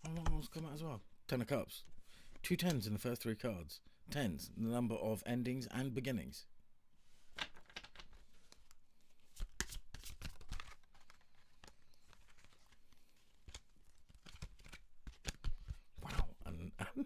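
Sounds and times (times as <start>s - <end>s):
cards being shuffled: 0.0s - 0.9s, 7.2s - 16.4s.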